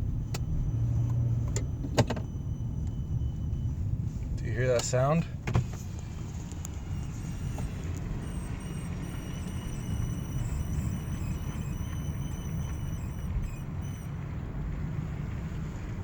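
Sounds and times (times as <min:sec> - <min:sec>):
low rumble of moving car: 0:00.0 - 0:16.0
car wheel squealing: 0:05.8 - 0:14.1.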